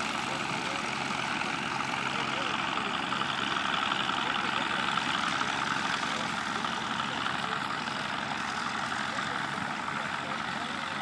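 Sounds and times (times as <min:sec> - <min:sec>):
tractor diesel engine running: 0:00.0 - 0:11.0.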